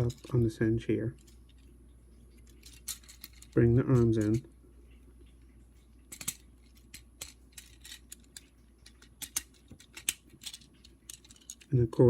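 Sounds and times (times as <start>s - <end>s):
faint steady hum: 0.0s - 12.0s
plastic toy parts clicking: 2.5s - 4.4s, 6.1s - 11.7s.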